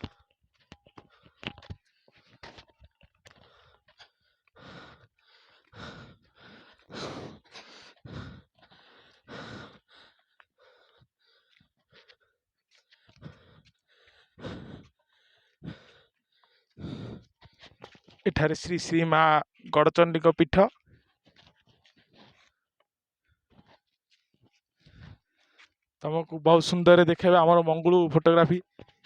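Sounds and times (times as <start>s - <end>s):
person breathing heavily: 3.3s - 17.8s.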